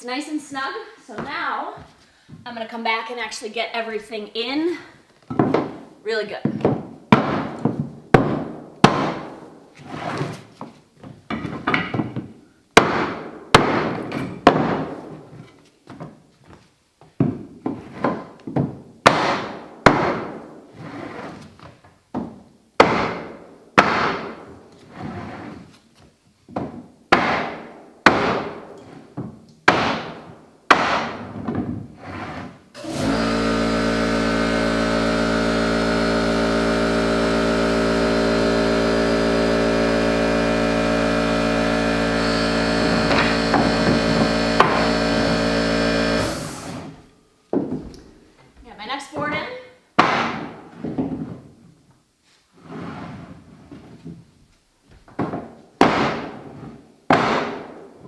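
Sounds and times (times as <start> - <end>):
drone with held tones: 33.0 - 47.0.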